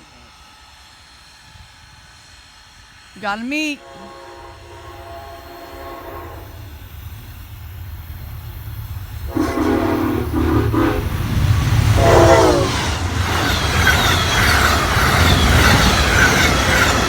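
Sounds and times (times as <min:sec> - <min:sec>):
train rushing past: 0:00.0 - 0:17.0
locomotive air horn blasts: 0:03.8 - 0:06.7, 0:09.3 - 0:11.2, 0:12.0 - 0:12.8.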